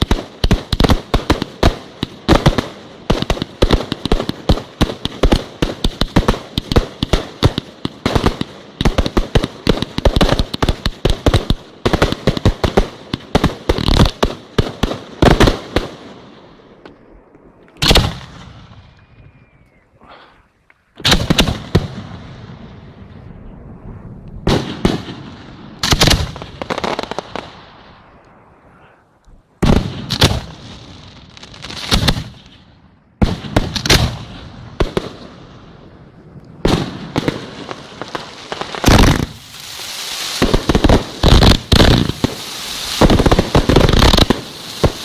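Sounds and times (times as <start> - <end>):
firework bursts: 21.0 - 29.0, 36.6 - 45.0.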